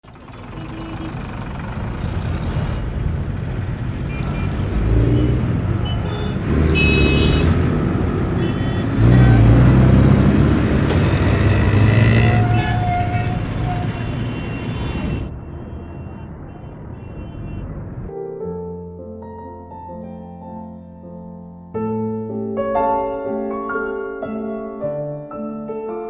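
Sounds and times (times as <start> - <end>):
road traffic noise: 0.0 - 18.1.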